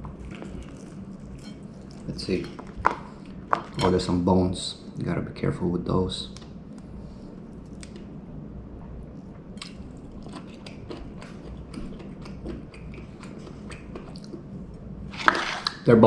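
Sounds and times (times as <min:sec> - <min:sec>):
person chewing crispy food: 0:00.0 - 0:02.2, 0:09.6 - 0:14.5.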